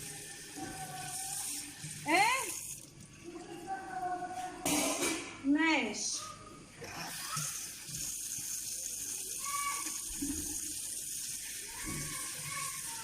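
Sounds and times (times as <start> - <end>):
dishes being rinsed: 0.0 - 3.0, 6.8 - 13.0
tap running into sink: 11.7 - 12.8.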